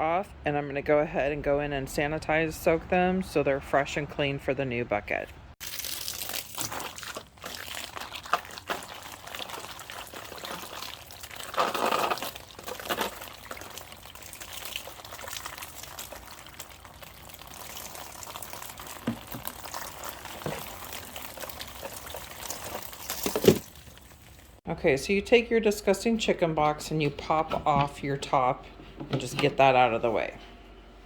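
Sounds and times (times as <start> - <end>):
garden hose spraying water: 5.6 - 24.6.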